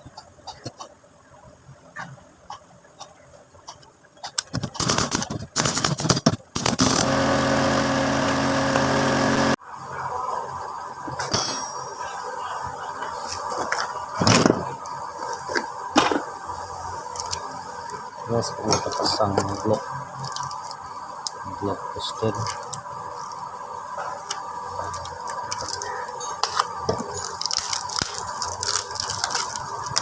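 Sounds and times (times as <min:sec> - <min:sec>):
small motor-driven tool running: 0:06.7 - 0:09.6.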